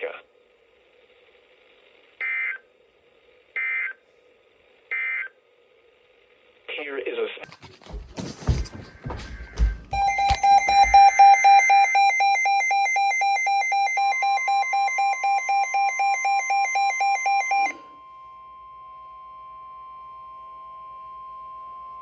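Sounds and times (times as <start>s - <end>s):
steady warning alarm tone: 9.0s - 17.9s
radio alert alarm beeping rapidly: 10.0s - 17.8s.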